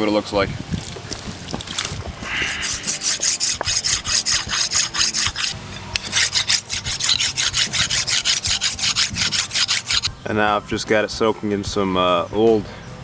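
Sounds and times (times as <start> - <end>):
stone scraping on steel blade: 2.2 - 10.1.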